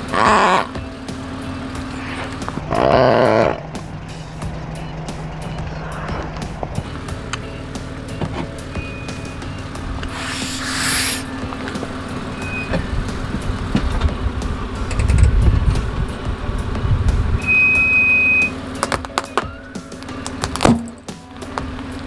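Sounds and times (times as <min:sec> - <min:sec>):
car engine humming: 0:00.0 - 0:14.9
short hiss: 0:10.1 - 0:12.8.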